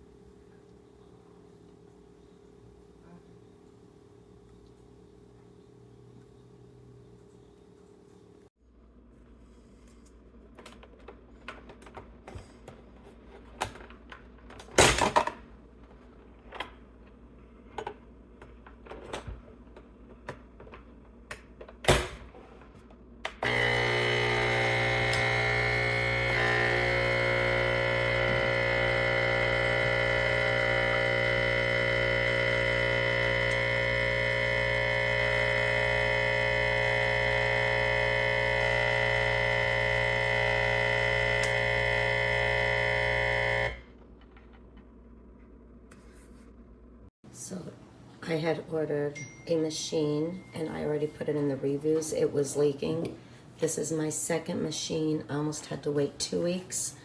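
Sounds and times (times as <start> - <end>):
espresso machine pump humming: 23.4 - 43.8.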